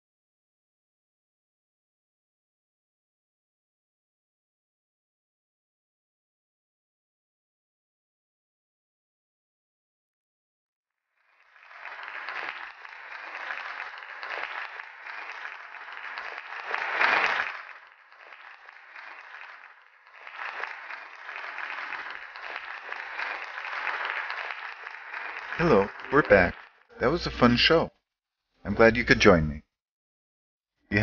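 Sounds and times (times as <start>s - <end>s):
audience applause: 11.2s - 27.8s.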